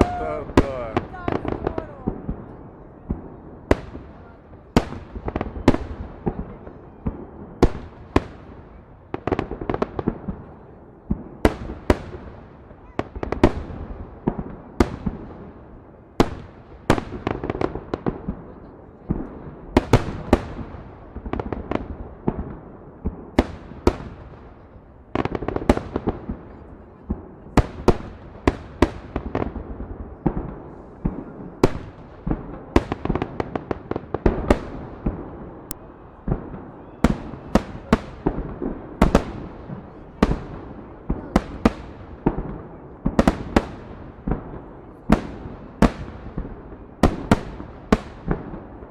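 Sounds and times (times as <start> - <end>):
fireworks bangs: 0.0 - 48.9.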